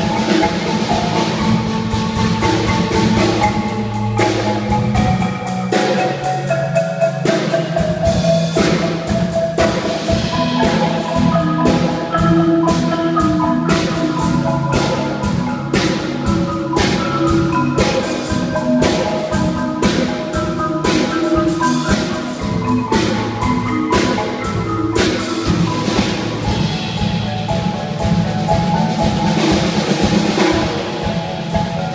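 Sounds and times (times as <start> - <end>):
marimbas playing legato: 0.0 - 31.9.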